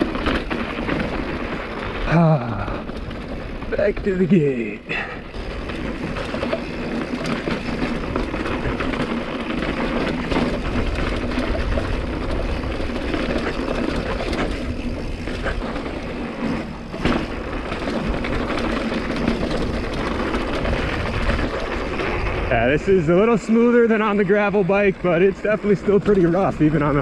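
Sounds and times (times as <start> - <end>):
bike rattling: 0.0 - 27.0
tyres rumbling over gravel: 0.0 - 27.0
wind noise on microphone: 5.3 - 23.1.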